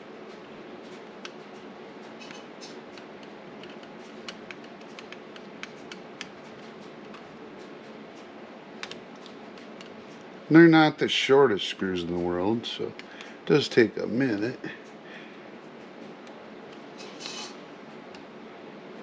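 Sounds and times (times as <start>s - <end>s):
screwdriver clicking and scraping: 17.0s - 17.6s.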